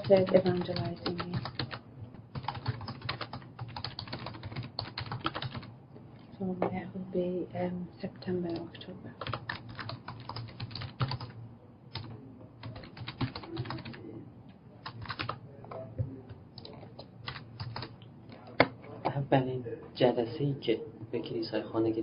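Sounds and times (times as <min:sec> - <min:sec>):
typing on computer keyboard: 0:00.0 - 0:05.7, 0:08.5 - 0:14.0, 0:14.8 - 0:15.4, 0:16.6 - 0:17.9
low steady hum: 0:00.0 - 0:22.0.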